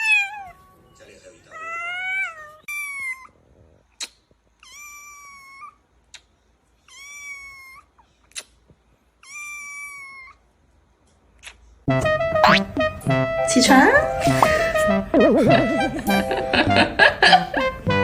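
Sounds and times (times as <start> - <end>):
cat meowing: 0.0 - 3.4, 4.6 - 5.8, 6.8 - 8.0, 9.2 - 10.4.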